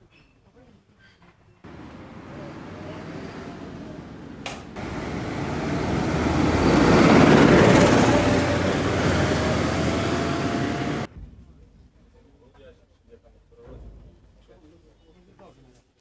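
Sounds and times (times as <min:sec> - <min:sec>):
heavy vehicle engine running: 0:01.7 - 0:11.1.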